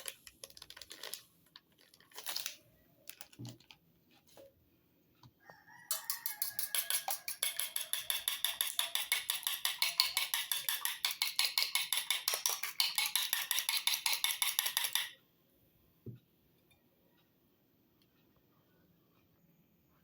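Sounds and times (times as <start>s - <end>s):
fork beating eggs in a bowl: 5.9s - 15.2s.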